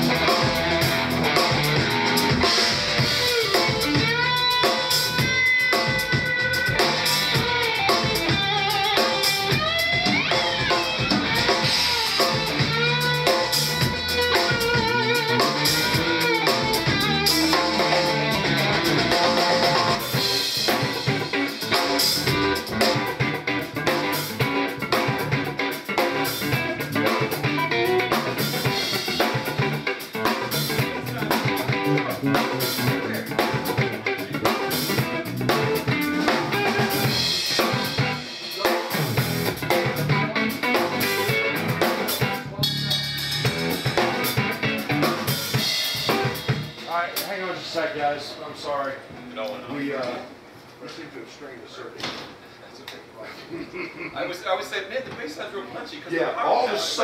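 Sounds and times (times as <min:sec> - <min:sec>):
rock band playing live: 0:00.0 - 0:47.3.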